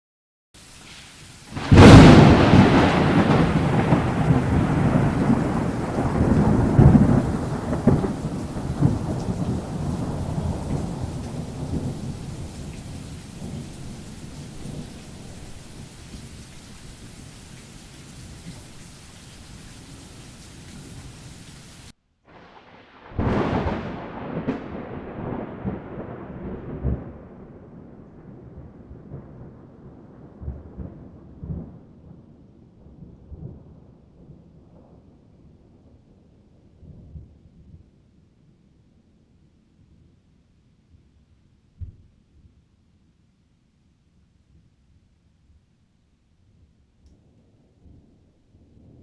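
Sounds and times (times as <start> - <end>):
rain hissing: 0.6 - 23.6
thunder rumbling: 1.4 - 37.9.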